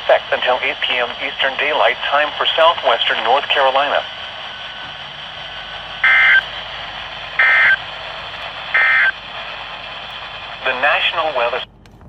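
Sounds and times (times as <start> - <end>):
radio hiss: 0.0 - 11.7
buzzy digital data bursts: 6.0 - 6.4, 7.4 - 7.8, 8.7 - 9.2.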